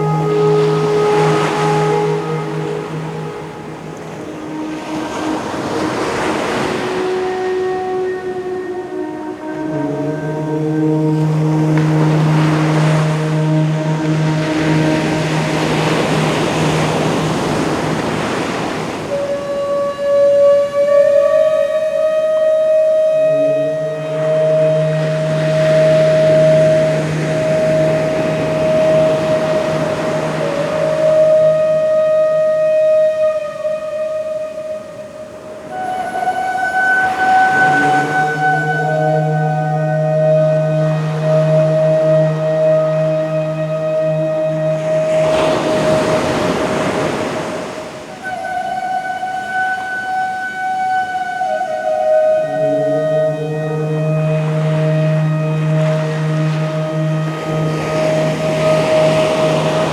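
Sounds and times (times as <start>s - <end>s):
held drone tones: 0.0s - 59.9s
low sung om drone: 0.0s - 59.9s
ocean surf washing: 0.0s - 59.9s
sustained flute note: 0.0s - 59.9s
ocean wave washing in: 44.0s - 48.3s, 54.2s - 59.9s.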